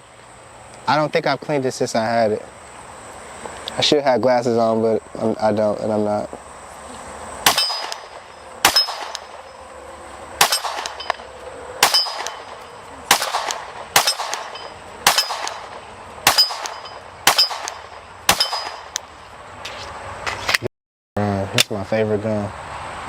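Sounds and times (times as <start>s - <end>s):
pistol shots: 7.4s - 9.5s, 10.4s - 19.1s
metallic ring of steel target: 7.4s - 9.7s, 10.4s - 19.0s.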